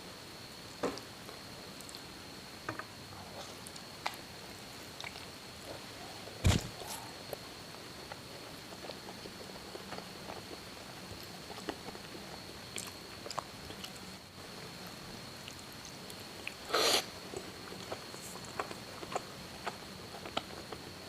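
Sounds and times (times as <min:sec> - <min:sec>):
chewing with wet mouth clicks: 0:05.0 - 0:05.3, 0:12.7 - 0:14.1.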